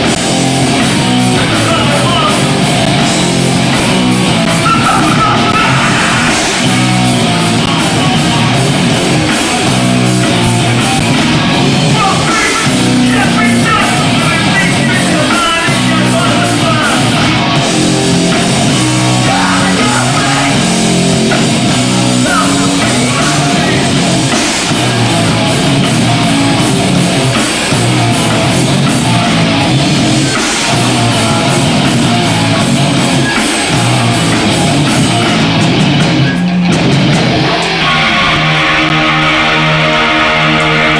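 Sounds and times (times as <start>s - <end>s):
distorted guitar and bass riffing: 0.0s - 40.9s
drums: 0.0s - 40.9s
shouted vocals: 4.2s - 8.3s, 11.4s - 17.6s, 18.5s - 25.4s.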